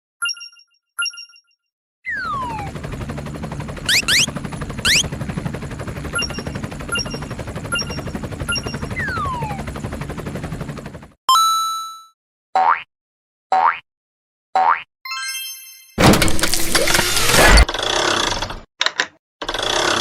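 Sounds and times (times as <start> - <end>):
cartoon whistle glides: 2.1 - 2.7, 3.9 - 5.1, 7.8 - 9.7.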